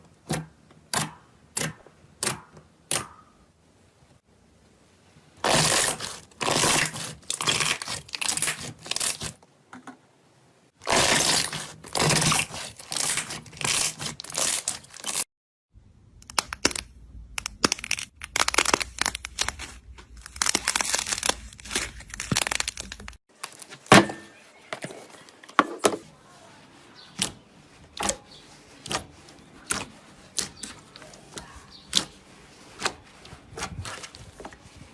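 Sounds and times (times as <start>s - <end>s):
slime crackling: 5.4s - 9.4s, 10.8s - 15.2s, 16.3s - 23.8s, 26.7s - 34.4s.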